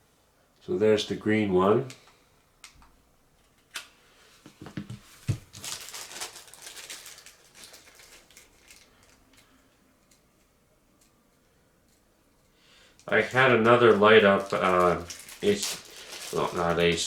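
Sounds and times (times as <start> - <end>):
plastic packaging crinkling: 5.1 - 10.2, 13.0 - 17.0.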